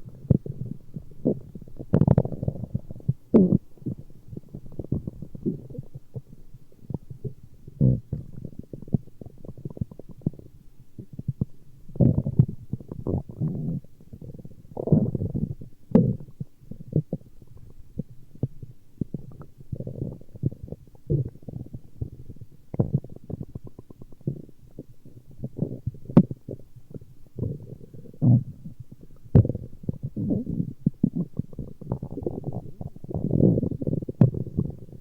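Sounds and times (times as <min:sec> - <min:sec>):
stomach growling: 0:00.0 - 0:35.0.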